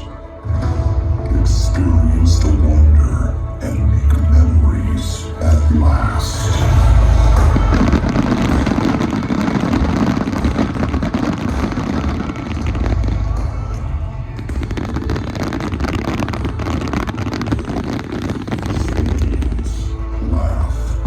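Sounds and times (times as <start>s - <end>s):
background music: 0.0s - 21.0s
deep low rumble: 0.0s - 21.0s
fireworks crackling and popping: 5.6s - 21.0s.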